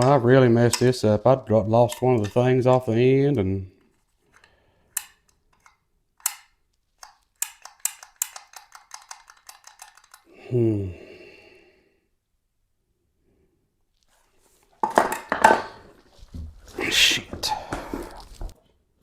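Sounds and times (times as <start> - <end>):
small hard parts clicking: 1.8 - 10.3
man groaning: 10.4 - 11.3.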